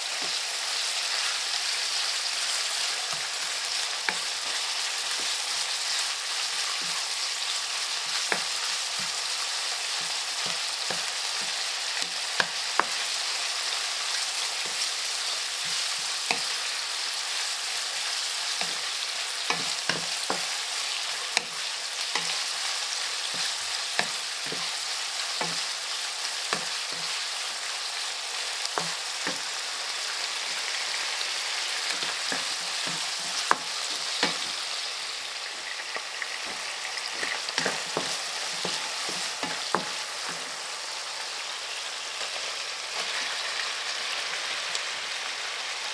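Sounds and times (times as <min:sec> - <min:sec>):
food sizzling in hot oil: 0:00.0 - 0:45.9
spatula scraping a pan: 0:01.8 - 0:29.6, 0:31.6 - 0:34.8, 0:36.4 - 0:40.7.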